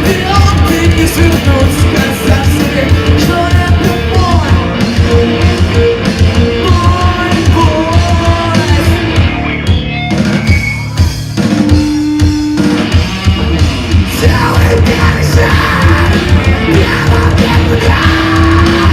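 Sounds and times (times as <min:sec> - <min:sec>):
person singing: 0:00.0 - 0:05.5, 0:06.4 - 0:09.4, 0:14.2 - 0:18.9
distorted guitars: 0:00.0 - 0:18.9
pounding drums: 0:00.0 - 0:18.9.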